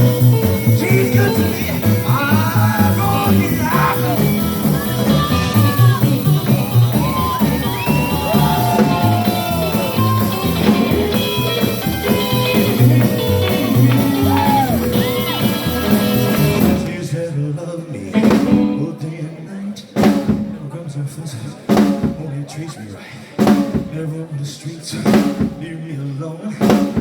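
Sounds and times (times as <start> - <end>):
drum and bass beat: 0.0 - 17.0
sliding melody lines: 0.0 - 17.0
rock and roll band playing: 0.0 - 17.2, 18.1 - 19.1, 20.0 - 20.6.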